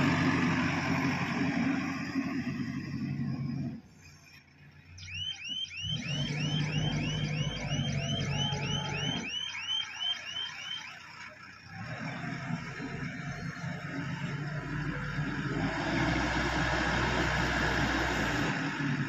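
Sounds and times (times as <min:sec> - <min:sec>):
excavator diesel engine: 0:00.0 - 0:19.0
electronic warning alarm chirping: 0:05.0 - 0:11.0.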